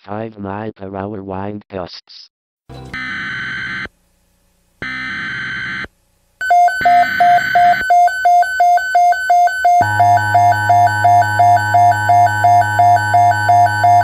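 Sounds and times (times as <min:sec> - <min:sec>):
buzzing digital squawks: 0:02.9 - 0:03.9, 0:04.8 - 0:05.9
fast electronic beeping: 0:06.4 - 0:14.0
electronic music with low bass: 0:09.8 - 0:14.0.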